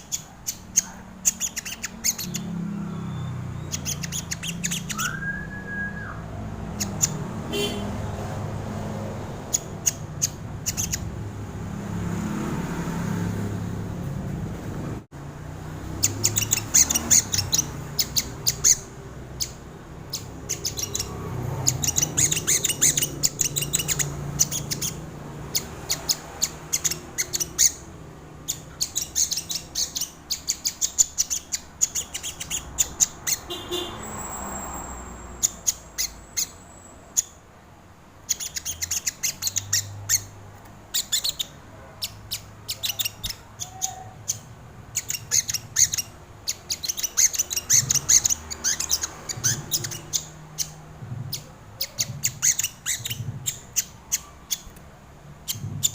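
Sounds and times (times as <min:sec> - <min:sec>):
bird chips and ticks: 0:00.0 - 0:05.2, 0:09.5 - 0:11.1, 0:15.9 - 0:34.5, 0:38.2 - 0:55.9.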